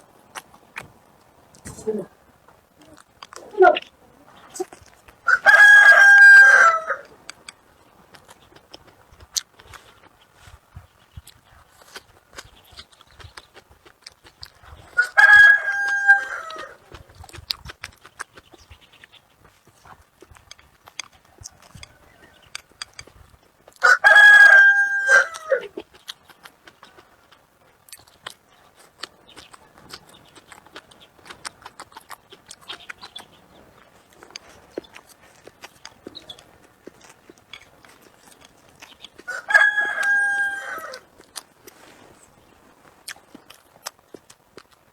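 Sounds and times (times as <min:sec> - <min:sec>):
faint eating clicks: 0:00.0 - 0:44.9
rooster crowing: 0:05.2 - 0:07.1, 0:15.0 - 0:16.8, 0:23.8 - 0:25.7, 0:39.3 - 0:41.0.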